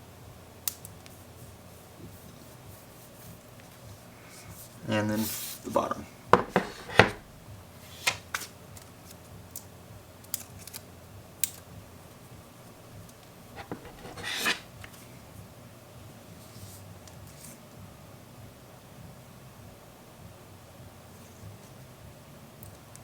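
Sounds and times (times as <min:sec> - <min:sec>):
short rustling scrape: 0:06.4 - 0:07.3, 0:13.6 - 0:14.7.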